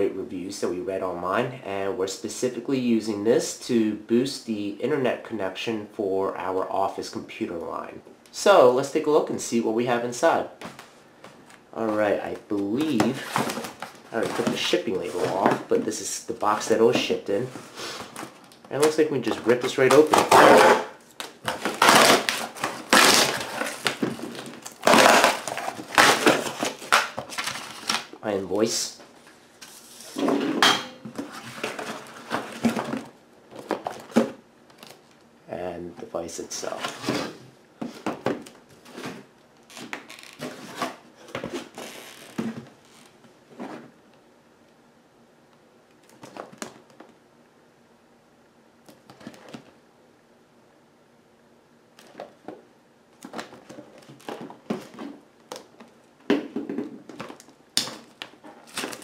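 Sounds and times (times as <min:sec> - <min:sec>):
packaging rustling and scraping: 0:10.7 - 0:28.1, 0:29.6 - 0:35.2, 0:36.6 - 0:43.9, 0:53.2 - 0:56.0, 0:56.6 - 0:59.0
cardboard box tearing: 0:21.5 - 0:28.0.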